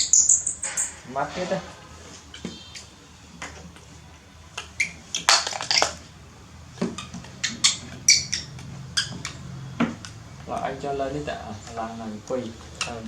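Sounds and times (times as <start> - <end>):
small hard objects clicking: 4.6 - 6.0.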